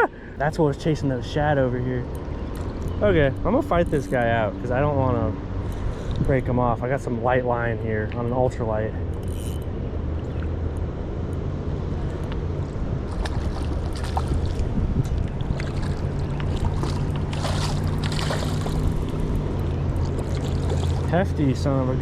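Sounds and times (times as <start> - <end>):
steady low hum: 0.0 - 22.0
running water rushing: 13.0 - 22.0.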